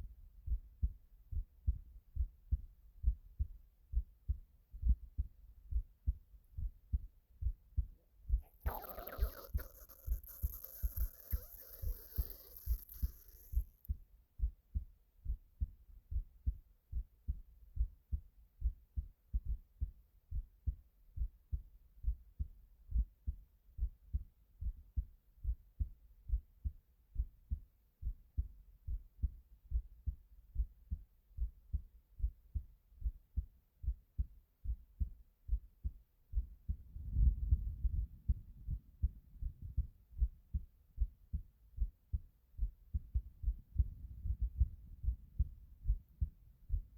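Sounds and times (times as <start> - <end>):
heartbeat thumps: 0.0 - 8.7, 12.7 - 46.9
low rumble: 43.2 - 46.9.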